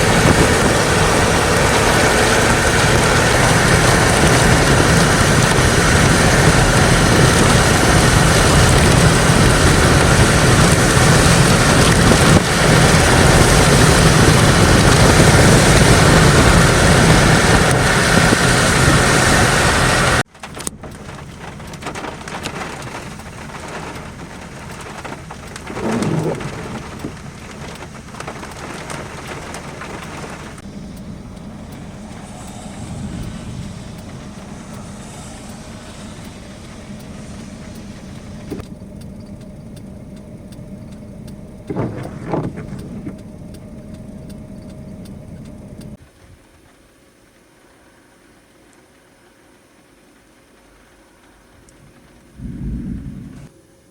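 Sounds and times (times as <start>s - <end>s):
car running: 0.0s - 46.4s, 50.4s - 53.9s
heavy rain pattering: 0.0s - 47.5s, 48.3s - 53.5s
light ticks: 20.5s - 46.0s
faint hum: 51.5s - 53.9s
brief low rumble: 52.3s - 53.6s.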